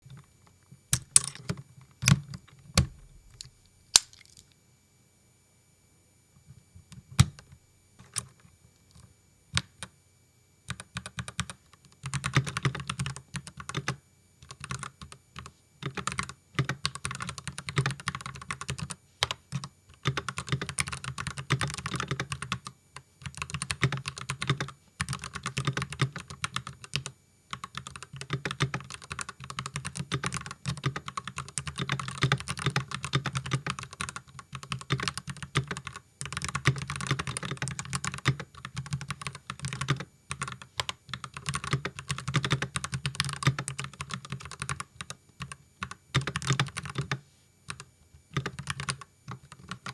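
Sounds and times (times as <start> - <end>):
mechanical keyboard typing: 10.7 - 49.9.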